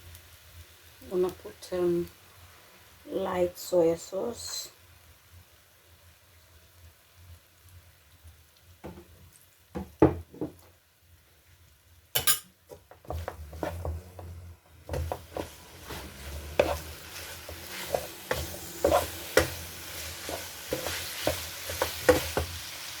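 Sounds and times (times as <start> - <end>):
food sizzling in a pan: 0.0 - 23.0
utensils scraping against a pan: 12.2 - 22.8.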